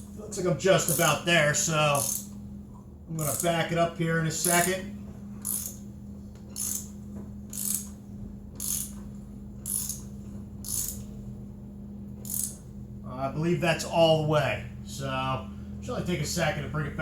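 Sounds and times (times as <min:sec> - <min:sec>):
ratchet clicking: 0:02.0 - 0:02.3, 0:03.2 - 0:03.6, 0:04.4 - 0:04.7, 0:05.4 - 0:05.8, 0:06.5 - 0:06.9, 0:07.5 - 0:08.0, 0:08.6 - 0:09.0, 0:09.6 - 0:11.1, 0:12.2 - 0:12.6.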